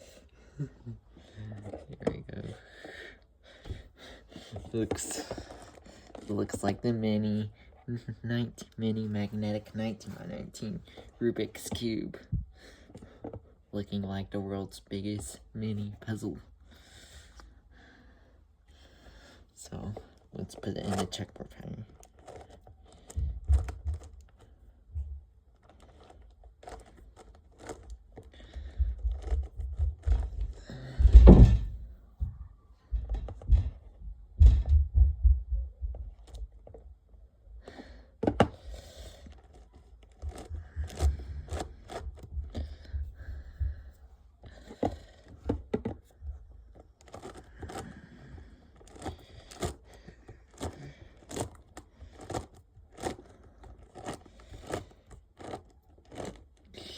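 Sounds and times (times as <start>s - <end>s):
handling thumps: 28.6s - 32.4s.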